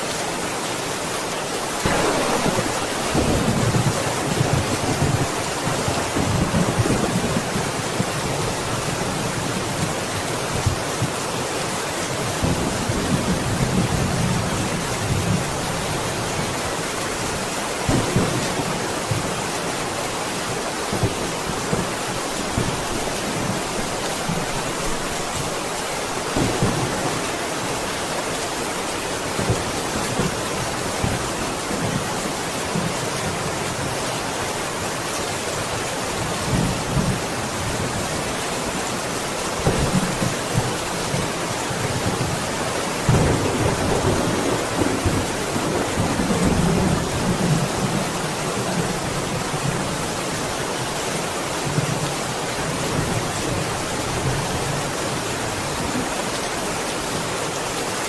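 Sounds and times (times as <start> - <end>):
heavy rain hissing: 0.0 - 58.0
thunder rumbling: 1.8 - 8.7, 26.2 - 27.8, 43.0 - 49.2.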